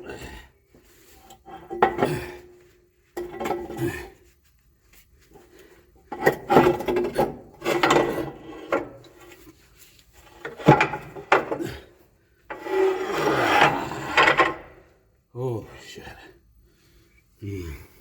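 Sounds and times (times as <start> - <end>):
motor scraping against metal: 12.5 - 14.8.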